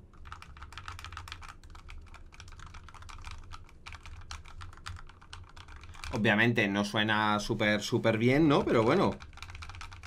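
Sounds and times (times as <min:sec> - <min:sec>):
mechanical keyboard typing: 0:00.2 - 0:06.2, 0:08.4 - 0:10.0.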